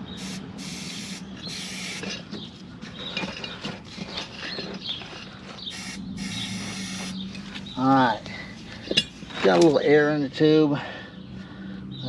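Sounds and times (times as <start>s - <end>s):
air hissing into tire: 0.0s - 2.2s, 5.7s - 7.2s
low steady hum: 1.2s - 9.8s
clicks and rattles: 2.0s - 5.7s.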